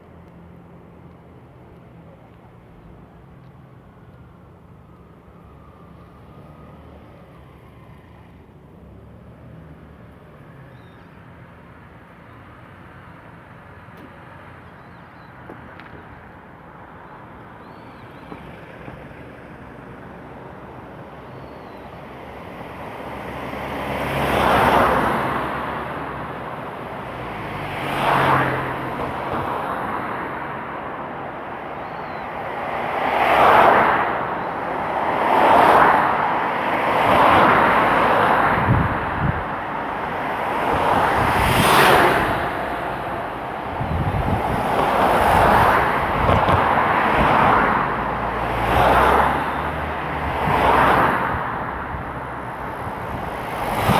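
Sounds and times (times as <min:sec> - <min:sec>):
cars passing: 0:00.0 - 0:53.9.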